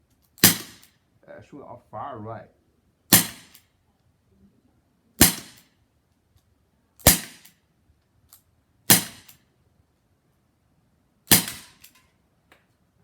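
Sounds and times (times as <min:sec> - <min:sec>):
air pistol pops: 0:11.3 - 0:12.0.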